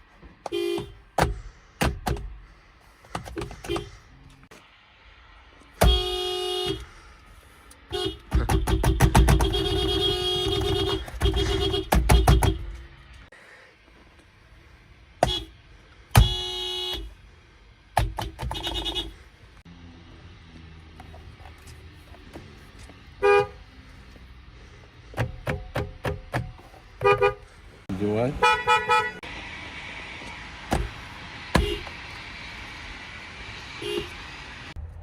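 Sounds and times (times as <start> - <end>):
car horn honking: 0.4 - 1.1, 3.5 - 4.0, 5.8 - 7.0, 7.9 - 12.8, 15.2 - 17.2, 18.3 - 19.2, 23.2 - 23.7, 27.0 - 29.3, 31.5 - 32.0, 33.8 - 34.2.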